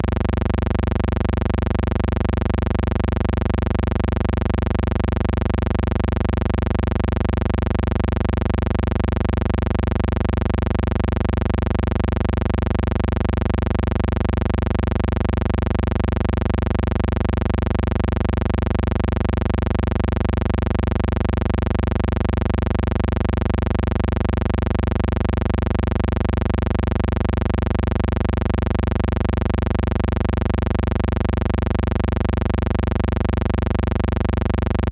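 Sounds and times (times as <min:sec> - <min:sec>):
low hum: 0:00.0 - 0:05.8.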